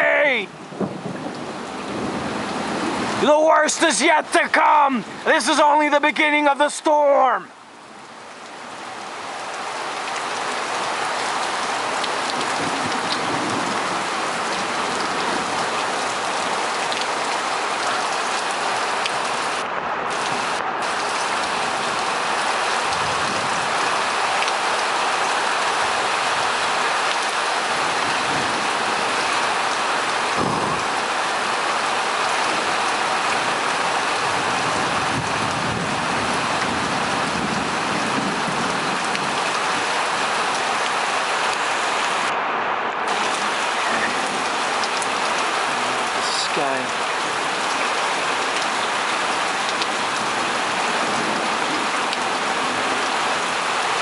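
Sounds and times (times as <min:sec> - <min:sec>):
heavy rain pouring: 0:00.0 - 0:54.0
low rumbles of thunder: 0:30.3 - 0:30.9.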